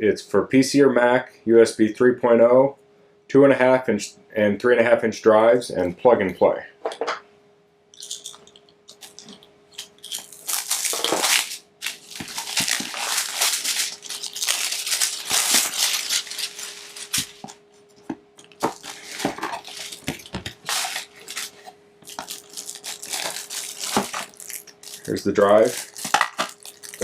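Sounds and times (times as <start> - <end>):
packaging rustling and crinkling: 8.0 - 27.0.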